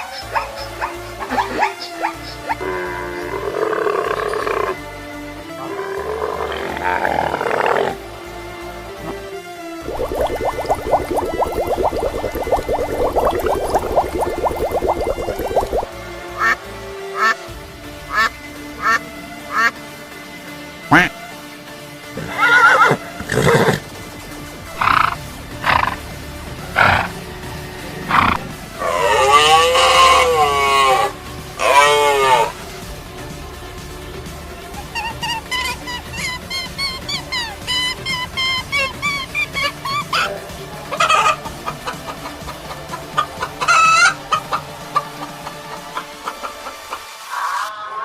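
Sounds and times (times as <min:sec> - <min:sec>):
background music: 0:00.0 - 0:48.0
horse whinnying: 0:22.2 - 0:23.8
chickens clucking: 0:40.9 - 0:47.3.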